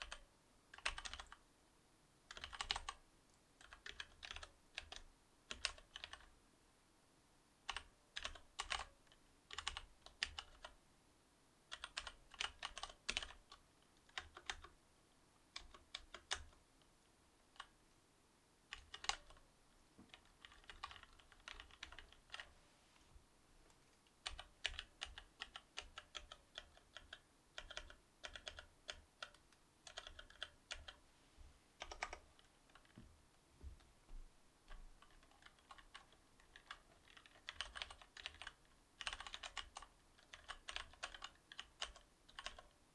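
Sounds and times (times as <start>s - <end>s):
mechanical keyboard typing: 0.0s - 1.4s, 2.3s - 3.0s, 3.6s - 6.3s, 7.7s - 10.8s, 11.7s - 14.8s, 15.5s - 16.6s, 18.7s - 19.4s, 20.1s - 22.5s, 24.2s - 31.0s, 31.8s - 33.0s, 34.7s - 42.8s.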